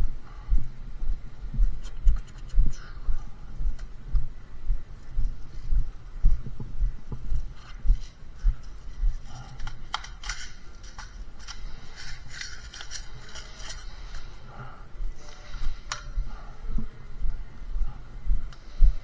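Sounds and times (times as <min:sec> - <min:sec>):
gear rustling: 0:07.9 - 0:14.4.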